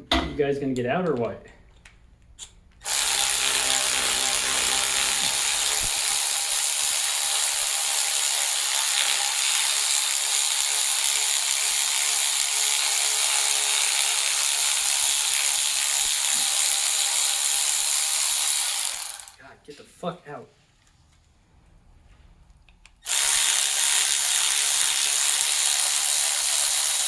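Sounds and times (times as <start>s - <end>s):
power tool running: 2.8s - 19.4s, 23.0s - 27.0s.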